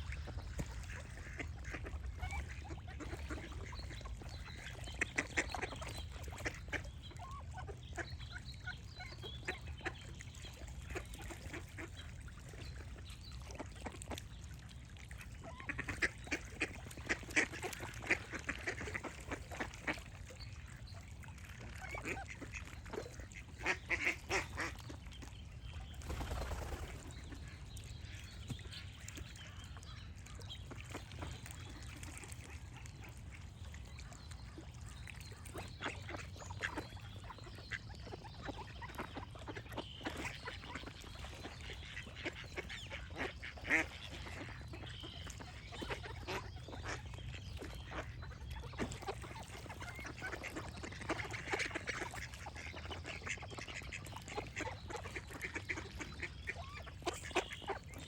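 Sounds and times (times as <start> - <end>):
ducks quacking: 0.1 - 10.0, 15.4 - 20.1, 21.7 - 25.0, 35.3 - 58.0.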